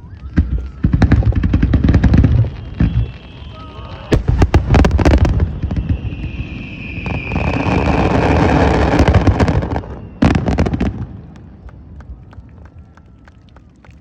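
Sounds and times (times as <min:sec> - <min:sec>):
firework whistling: 0:00.0 - 0:11.1
fireworks bangs: 0:00.0 - 0:12.2
fireworks crackling: 0:00.0 - 0:14.0.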